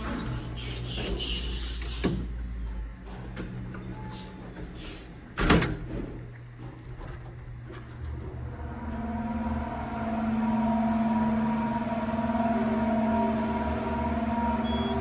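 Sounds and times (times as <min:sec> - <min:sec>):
elevator motor scraping whine: 0:07.7 - 0:15.0.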